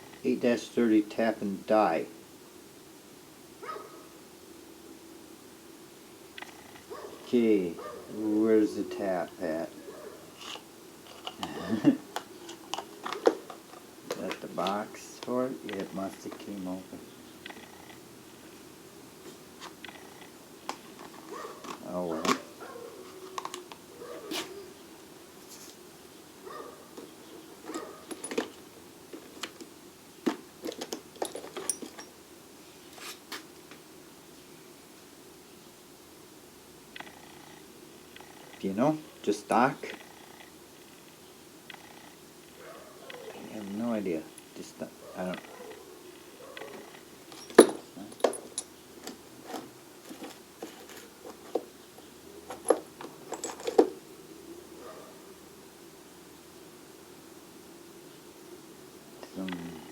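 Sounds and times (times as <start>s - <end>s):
metal tools clicking and clinking: 27.7s - 28.6s, 30.6s - 32.2s, 46.6s - 51.6s, 52.5s - 53.9s.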